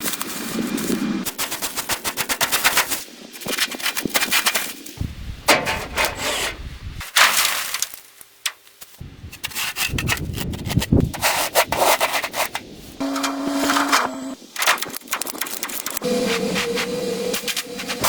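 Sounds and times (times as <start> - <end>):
rough scraping on hard surface: 5.5 - 6.7, 9.4 - 14.4.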